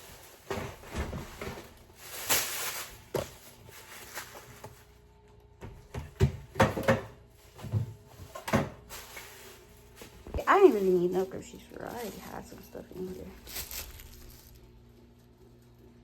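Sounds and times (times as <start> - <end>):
packaging rustling: 0.0 - 5.0, 7.3 - 14.8
items knocking when set down: 5.6 - 9.2.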